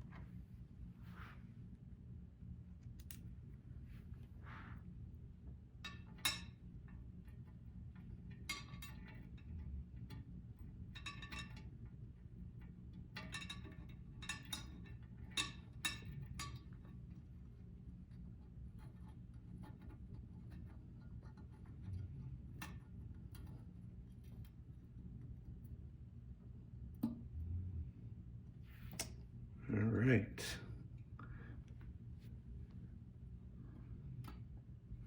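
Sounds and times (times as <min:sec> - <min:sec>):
faint low hum: 0:00.0 - 0:35.0
metallic clicks of small parts: 0:02.9 - 0:03.3.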